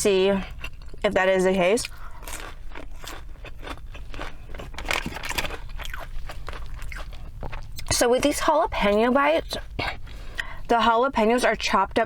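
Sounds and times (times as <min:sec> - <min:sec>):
person chewing crunchy food: 0:00.4 - 0:08.0.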